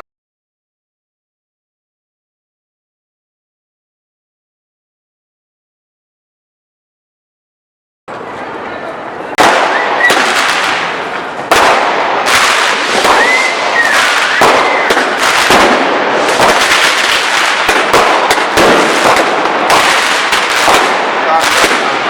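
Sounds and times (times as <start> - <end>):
firecrackers crackling: 9.1 - 22.0
firework whistling: 9.3 - 22.0
loud firework burst: 9.3 - 22.0.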